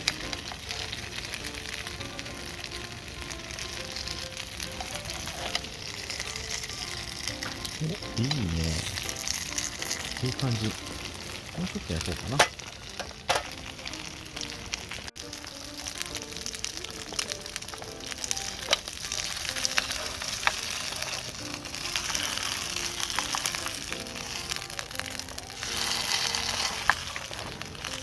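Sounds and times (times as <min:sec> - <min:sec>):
dumplings sizzling in a pan: 0:00.0 - 0:28.0
soft background music: 0:00.0 - 0:28.0.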